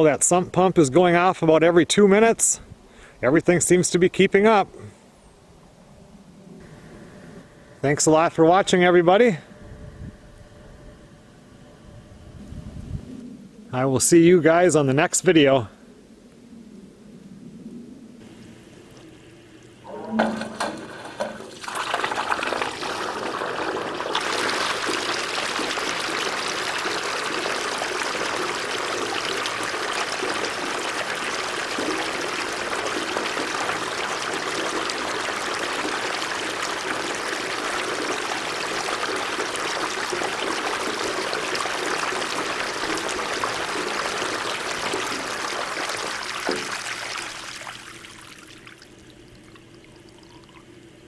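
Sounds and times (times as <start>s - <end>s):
water pouring and splashing: 19.8s - 50.7s
hissing water spray: 20.9s - 48.6s.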